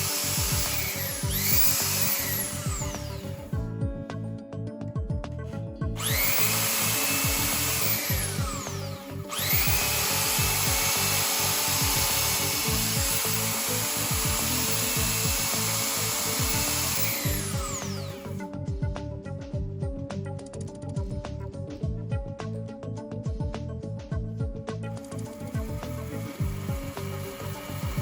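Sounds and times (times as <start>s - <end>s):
belt sander motor: 0.0s - 3.6s, 6.0s - 18.5s, 25.0s - 28.0s.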